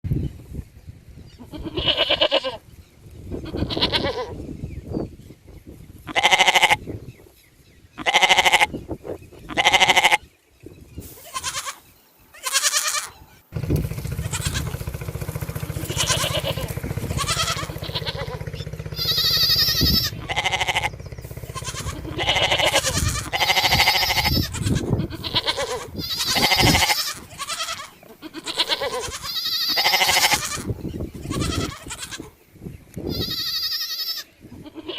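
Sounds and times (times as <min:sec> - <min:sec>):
sheep bleating: 0:01.4 - 0:02.6, 0:03.4 - 0:04.4, 0:06.1 - 0:06.8, 0:08.0 - 0:08.7, 0:09.5 - 0:10.2, 0:11.3 - 0:13.2, 0:14.1 - 0:14.8, 0:15.5 - 0:32.4, 0:33.1 - 0:34.9
steady low rumble: 0:13.5 - 0:27.0.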